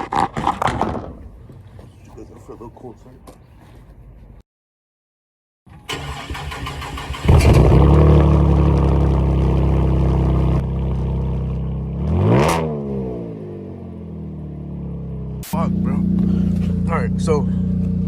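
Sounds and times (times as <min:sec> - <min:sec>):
car engine idling and revving: 0:05.9 - 0:18.0.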